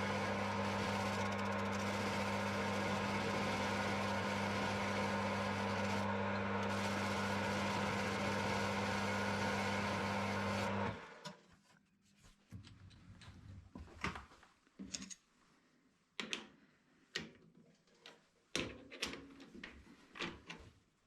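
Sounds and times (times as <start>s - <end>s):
metal lathe motor hum: 0.0s - 11.2s.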